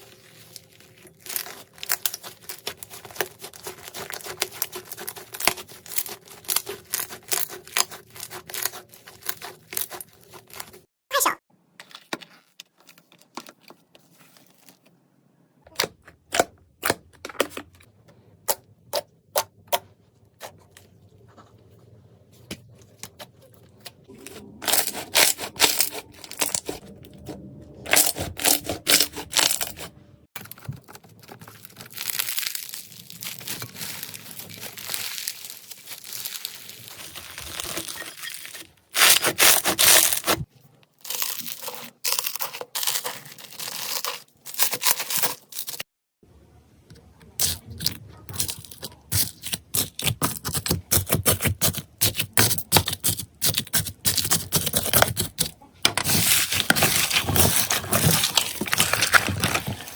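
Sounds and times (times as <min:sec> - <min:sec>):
slime clicking and crackling: 0:00.0 - 0:10.8, 0:30.9 - 0:40.4, 0:47.4 - 0:59.9.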